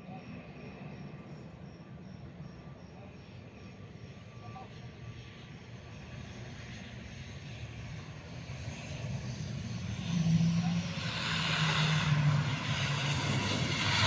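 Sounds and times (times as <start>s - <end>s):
turboprop engines droning: 0.0s - 14.0s.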